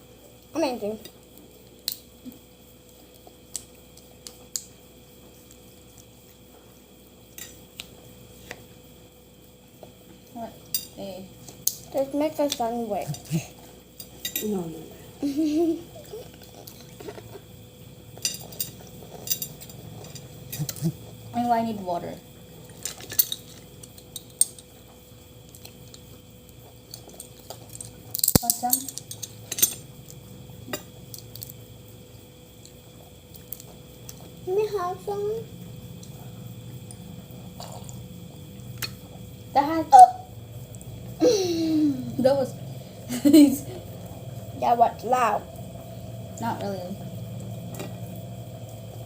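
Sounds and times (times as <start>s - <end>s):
faint steady hum: 0.0s - 49.0s
soft squishing of chewing: 24.9s - 27.9s.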